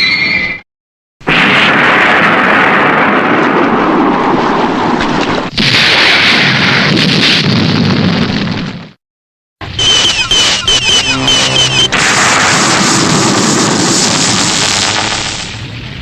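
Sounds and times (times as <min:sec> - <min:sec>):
explosion blast: 0:01.2 - 0:05.0, 0:10.9 - 0:15.5
hissy explosion blast: 0:01.3 - 0:04.6, 0:11.8 - 0:15.8.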